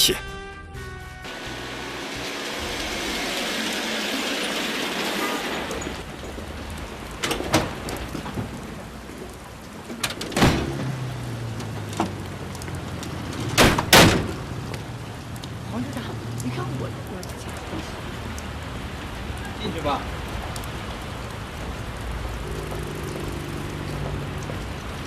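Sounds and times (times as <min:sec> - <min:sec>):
steady rain: 0:01.2 - 0:25.0
sharp cracks: 0:12.6 - 0:14.8.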